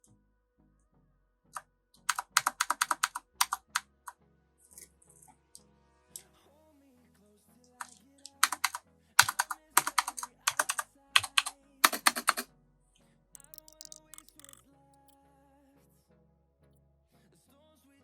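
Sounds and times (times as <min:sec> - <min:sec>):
faint background music: 0:00.0 - 0:18.0
keyboard typing clicks: 0:02.1 - 0:03.8, 0:08.3 - 0:12.4, 0:13.4 - 0:15.2.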